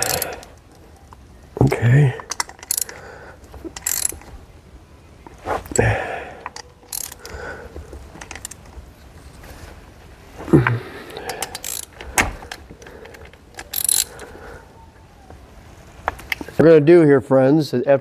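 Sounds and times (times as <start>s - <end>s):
hand tools clicking on metal: 0.0s - 4.3s, 5.7s - 8.8s, 11.1s - 14.3s.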